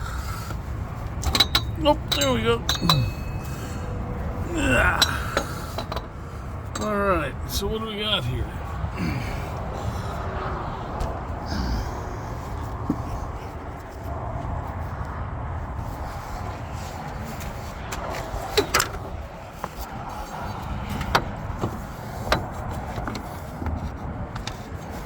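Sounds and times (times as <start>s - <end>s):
low rumble of vehicle noise: 0.0s - 25.0s
metallic clicks and clinks: 1.2s - 3.5s.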